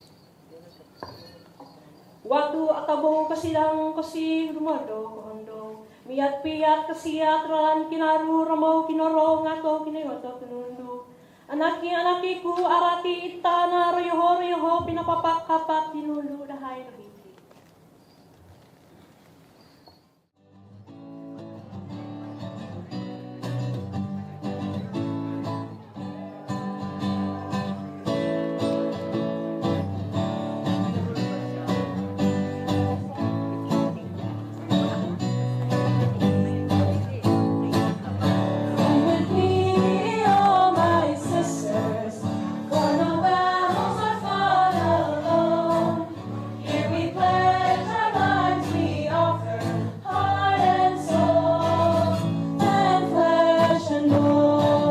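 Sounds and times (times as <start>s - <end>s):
strummed acoustic guitar: 20.4s - 54.9s
person singing: 38.8s - 54.9s.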